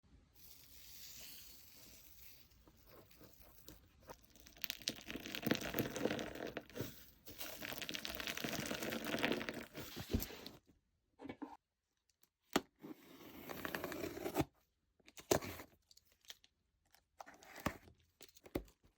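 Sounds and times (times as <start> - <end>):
slime rustling: 0.5 - 10.6
slime crackling and popping: 3.0 - 9.8.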